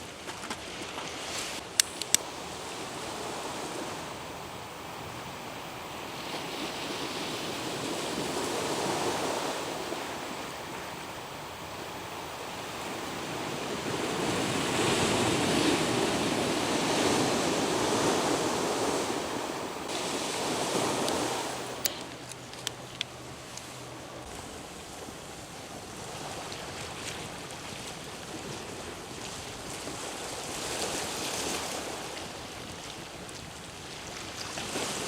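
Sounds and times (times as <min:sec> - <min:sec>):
sea waves washing ashore: 0:00.0 - 0:35.0
sharp clicks: 0:01.7 - 0:02.3.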